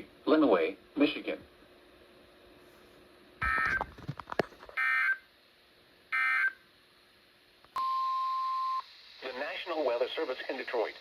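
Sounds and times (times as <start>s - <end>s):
steady beep tone: 7.8s - 8.8s.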